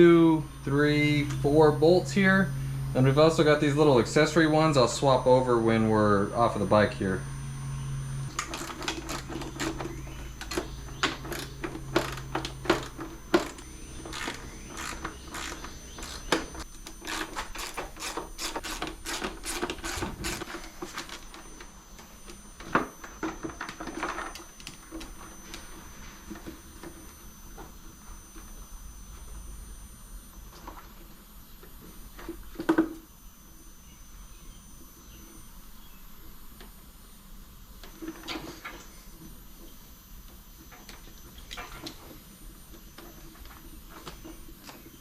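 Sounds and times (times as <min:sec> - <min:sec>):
hand ratchet clicking: 0:10.4 - 0:21.2.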